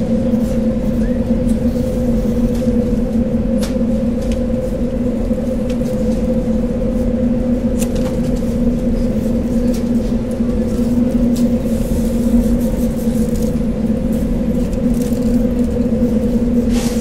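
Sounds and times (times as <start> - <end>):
low rumble: 0.0 - 17.0
mechanical hum: 0.0 - 17.0.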